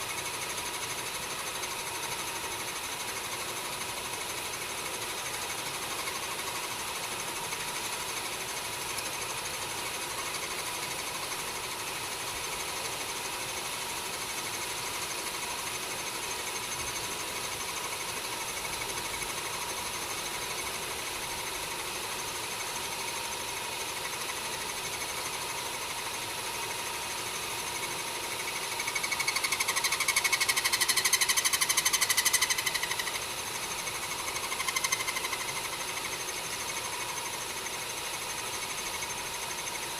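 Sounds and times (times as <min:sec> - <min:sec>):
lathe motor whining: 0:24.0 - 0:39.9.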